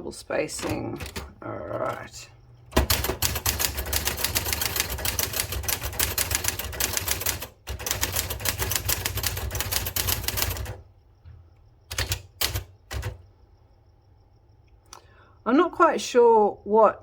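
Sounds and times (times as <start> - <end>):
typewriter clatters: 0.5 - 2.1, 2.7 - 10.8, 11.9 - 13.2
manual typewriter key clacks: 0.6 - 2.0, 2.7 - 10.8, 11.9 - 13.2.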